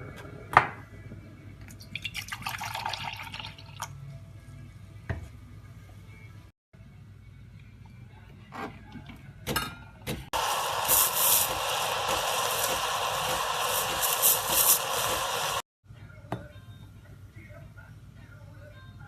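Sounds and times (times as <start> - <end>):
steam wand hissing: 10.4 - 15.6.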